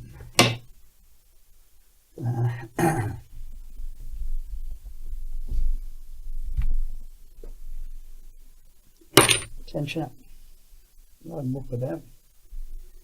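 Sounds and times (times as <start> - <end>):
man grunting: 2.2 - 3.2.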